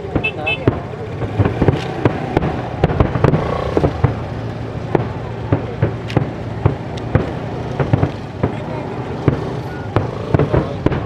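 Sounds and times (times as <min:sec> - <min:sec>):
firework shells bursting: 0:00.0 - 0:11.0.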